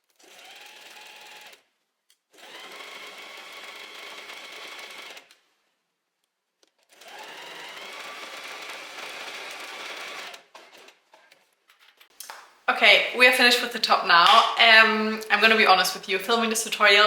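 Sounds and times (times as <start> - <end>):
sewing machine stitching: 0.0 - 1.7, 2.4 - 5.4, 6.7 - 11.4.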